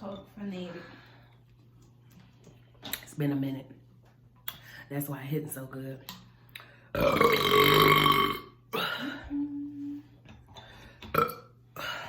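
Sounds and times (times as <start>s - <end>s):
woman burping loudly: 7.0s - 9.7s, 11.0s - 12.0s.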